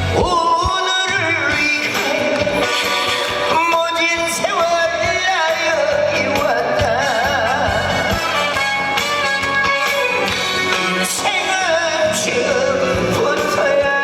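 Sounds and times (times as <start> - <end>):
trot music with band: 0.0 - 14.0.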